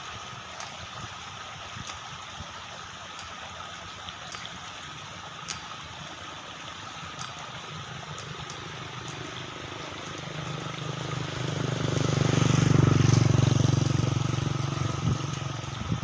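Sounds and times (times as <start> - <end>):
motor vehicle passing by: 7.5 - 16.0.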